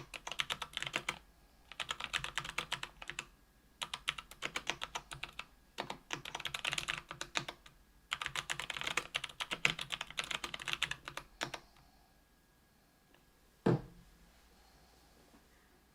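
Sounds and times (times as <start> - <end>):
loud thump: 13.6 - 14.0.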